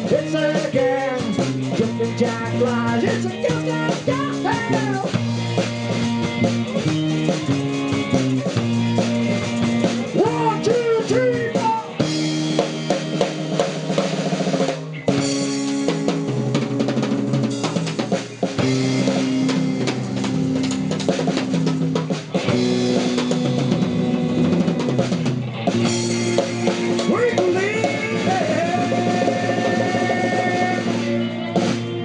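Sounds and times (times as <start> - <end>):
bass guitar: 0.0 - 32.0
drum kit: 0.0 - 32.0
electric guitar bending notes: 0.0 - 32.0.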